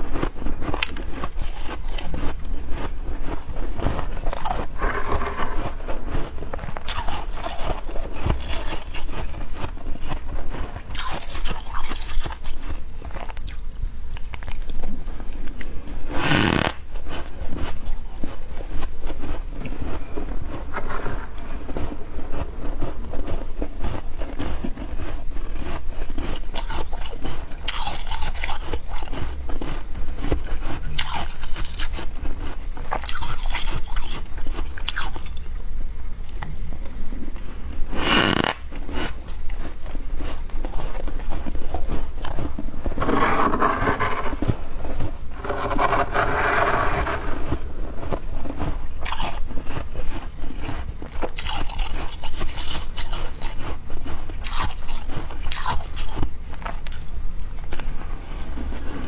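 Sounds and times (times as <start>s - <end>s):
crunching and chewing frost: 0.0s - 59.0s
spoon scraping: 4.3s - 8.9s, 42.9s - 48.2s.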